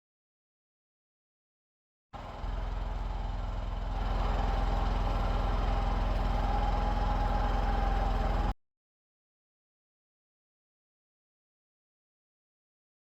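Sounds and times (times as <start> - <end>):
engine running: 2.2 - 8.5.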